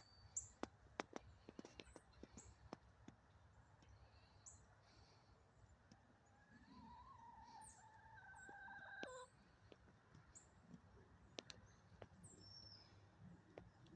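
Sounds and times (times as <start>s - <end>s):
small birds chirping: 0.0s - 6.4s, 7.4s - 13.9s
distant rooster crowing: 6.6s - 9.3s.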